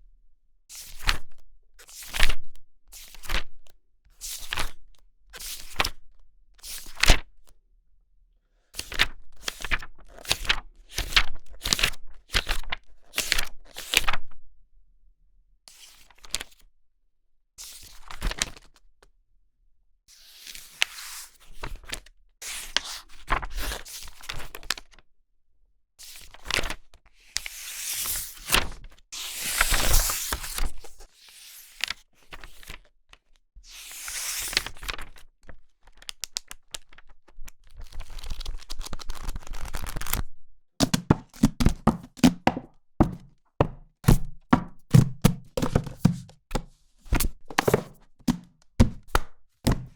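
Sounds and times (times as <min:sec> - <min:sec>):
book pages turning: 0:37.9 - 0:40.2, 0:40.8 - 0:49.9
sharp taps and light thumps: 0:40.8 - 0:46.7, 0:47.5 - 0:49.9.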